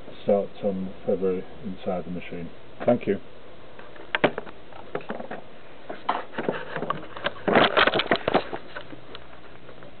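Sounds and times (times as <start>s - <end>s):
handling clicks and knocks: 3.8s - 10.0s.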